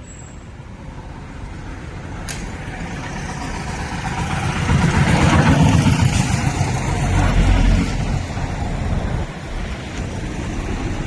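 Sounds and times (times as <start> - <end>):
motor vehicle running: 1.4 - 11.0.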